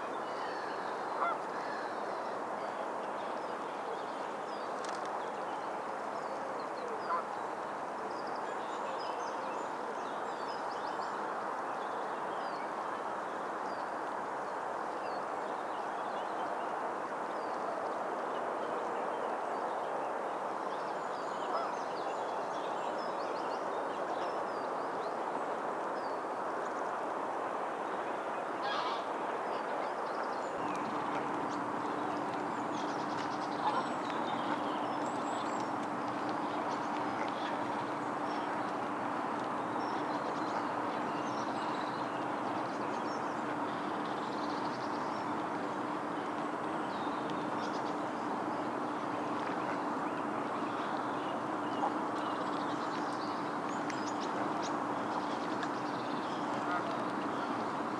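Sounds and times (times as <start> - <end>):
steady background hiss: 23.2 - 57.9.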